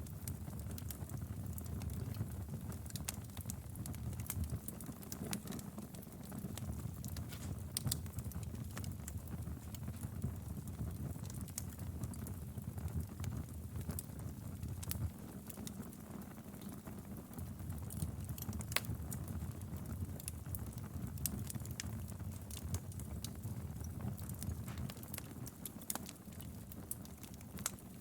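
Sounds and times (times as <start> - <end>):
low rumble of flames: 0.0 - 28.0
wood fire crackling and popping: 0.0 - 28.0.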